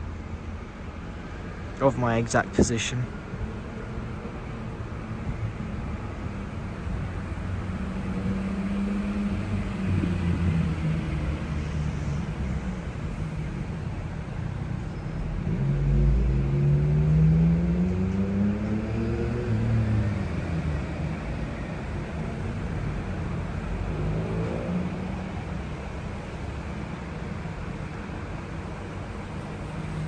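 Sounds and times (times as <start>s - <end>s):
vehicle engine: 0.0s - 30.0s
vehicle accelerating past: 7.6s - 12.4s, 15.3s - 22.0s, 23.6s - 25.4s.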